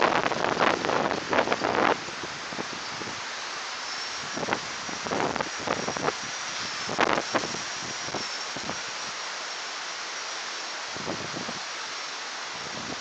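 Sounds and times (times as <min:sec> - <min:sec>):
wind buffeting microphone: 0:00.0 - 0:03.3, 0:04.2 - 0:08.8, 0:10.9 - 0:11.6.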